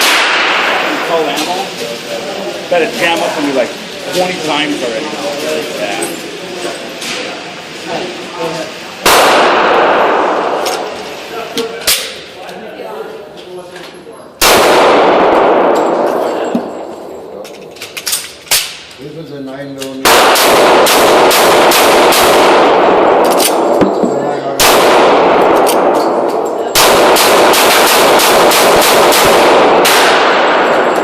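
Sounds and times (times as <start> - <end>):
pistol shots: 0.0 - 1.2, 9.0 - 11.0, 14.4 - 16.9, 20.0 - 24.0, 24.6 - 31.0.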